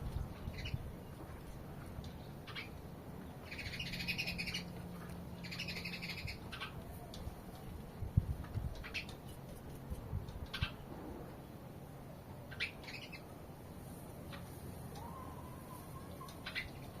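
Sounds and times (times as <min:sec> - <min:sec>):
sparrows chirping: 0:00.5 - 0:00.8, 0:02.2 - 0:04.7, 0:05.4 - 0:06.8, 0:12.5 - 0:13.3, 0:14.4 - 0:17.0.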